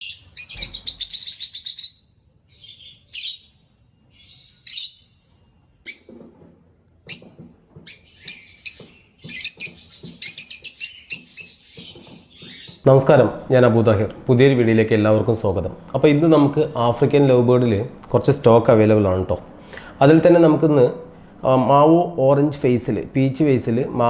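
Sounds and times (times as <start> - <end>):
birds chirping shrilly: 0.0 - 5.2, 7.1 - 14.6.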